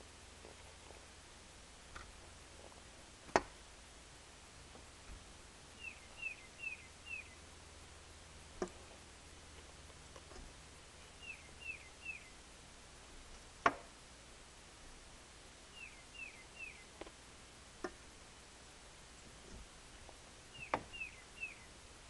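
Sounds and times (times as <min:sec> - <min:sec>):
bird chirping: 0:05.7 - 0:07.5, 0:11.0 - 0:12.4, 0:15.7 - 0:17.0, 0:20.5 - 0:21.8.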